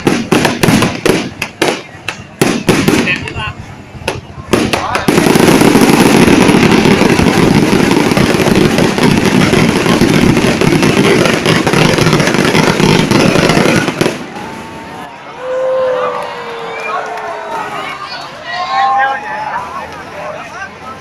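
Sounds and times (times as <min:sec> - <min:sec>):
fireworks crackling: 0:00.0 - 0:15.1.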